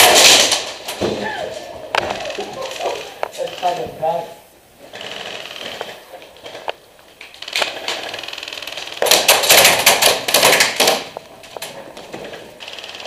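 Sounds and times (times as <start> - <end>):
airsoft rifle full-auto burst: 4.9 - 6.0.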